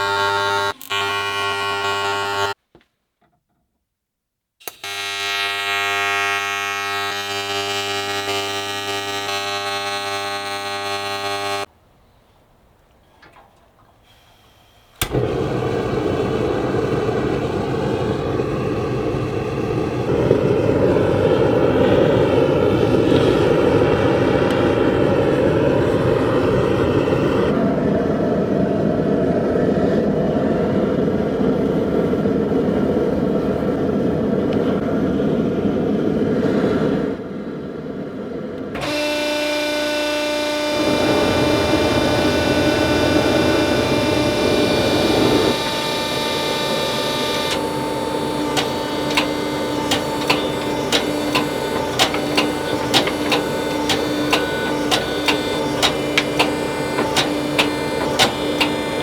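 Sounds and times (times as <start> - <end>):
motor humming: 0.0 - 2.6, 4.6 - 11.7, 14.1 - 27.5, 38.8 - 59.0
noisy machine running: 0.0 - 2.6, 4.6 - 11.7, 14.9 - 28.8, 38.7 - 59.0.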